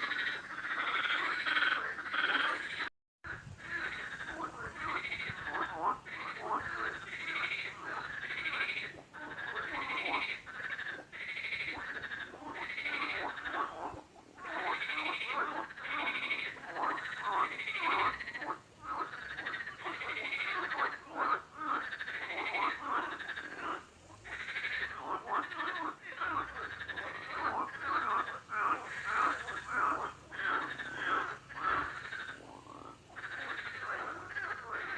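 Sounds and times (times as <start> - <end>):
frogs croaking in chorus: 0.0 - 34.9.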